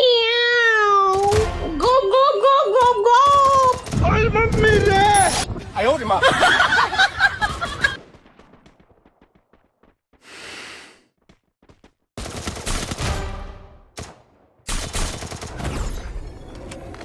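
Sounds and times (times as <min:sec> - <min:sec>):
gunfire in rapid bursts: 0:03.2 - 0:05.3, 0:12.2 - 0:15.8.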